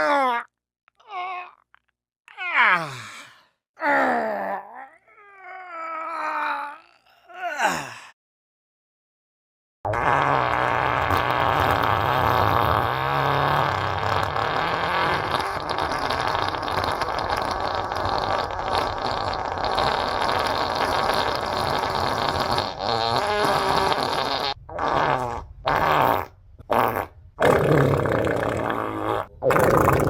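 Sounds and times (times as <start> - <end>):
loud fart noises: 9.9 - 30.0.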